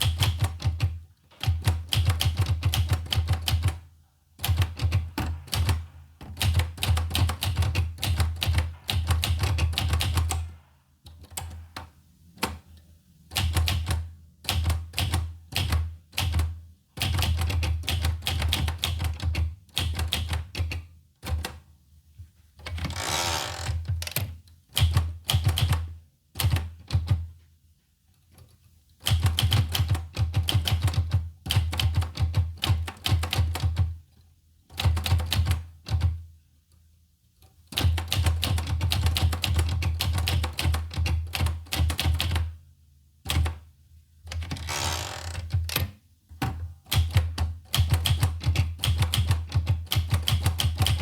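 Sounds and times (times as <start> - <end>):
typewriter keystrokes clacking: 0.0 - 3.8, 4.4 - 12.6, 13.3 - 21.6, 23.7 - 27.3, 29.0 - 33.9, 34.7 - 36.2, 37.7 - 42.5, 46.9 - 51.0
typewriter carriage rasping slide: 22.8 - 23.8, 44.6 - 45.5.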